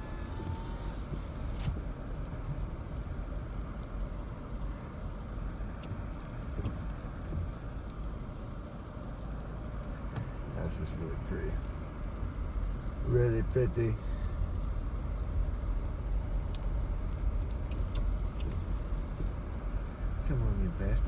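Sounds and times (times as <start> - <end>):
car engine and tyre rumble: 0.0 - 21.0
faint light clicks: 16.4 - 19.4.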